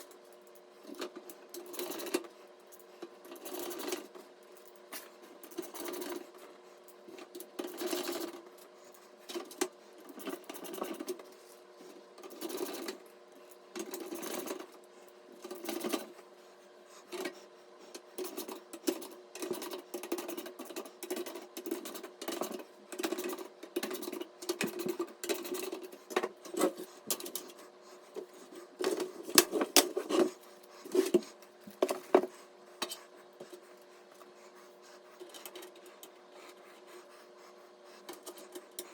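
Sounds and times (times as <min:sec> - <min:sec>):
computer parts clicking and scraping: 0:15.4 - 0:16.2, 0:17.1 - 0:33.6, 0:35.2 - 0:36.6.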